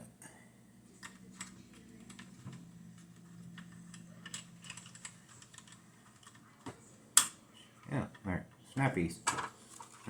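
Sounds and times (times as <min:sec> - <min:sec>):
faint low hum: 0:00.0 - 0:10.0
plastic toy parts clicking: 0:03.1 - 0:07.4.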